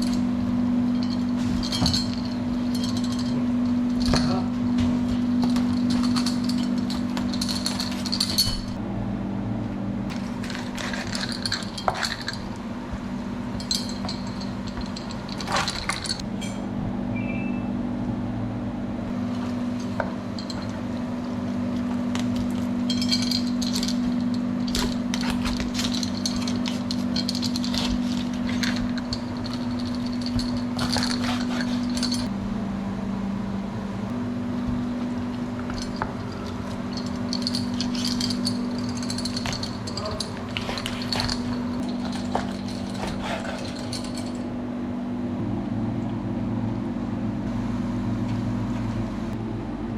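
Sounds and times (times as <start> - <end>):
steady low hum: 0.0 - 49.9
metal utensils and dishes clinking: 0.9 - 8.8, 10.1 - 12.6, 13.6 - 16.6, 21.8 - 32.3, 35.7 - 44.5.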